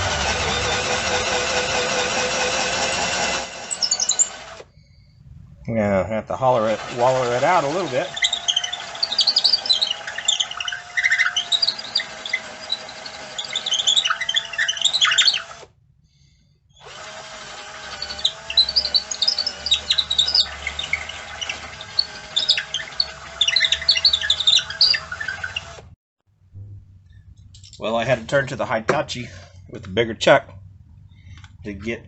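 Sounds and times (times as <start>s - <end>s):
drill bit squeaking in wood: 0.0s - 5.1s, 6.4s - 15.7s, 16.7s - 26.0s
power drill whining: 0.0s - 5.2s, 6.4s - 15.8s, 16.7s - 26.0s.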